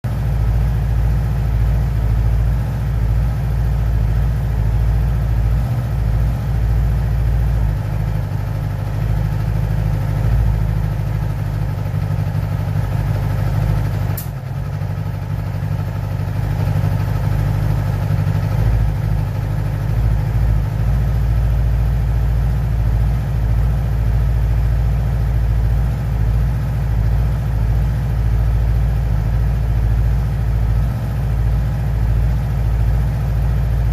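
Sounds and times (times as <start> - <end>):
motorcycle engine idling: 0.0 - 33.9
sharp click: 14.2 - 14.4.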